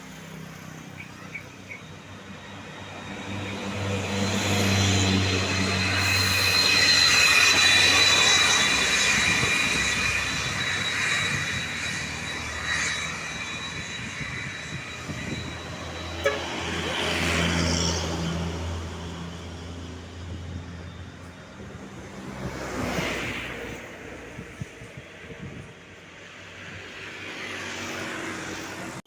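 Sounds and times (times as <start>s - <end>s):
large vehicle engine with whine: 0.0s - 29.0s
vehicle engine passing: 2.1s - 23.9s.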